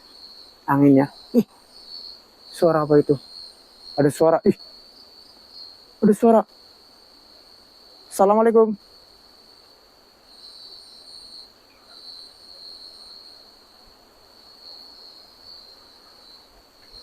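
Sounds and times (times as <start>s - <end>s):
crickets trilling: 0.0s - 17.0s.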